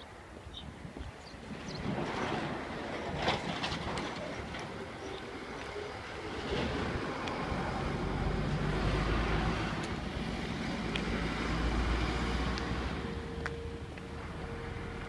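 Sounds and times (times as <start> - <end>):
vehicle passing by: 5.5 - 15.0.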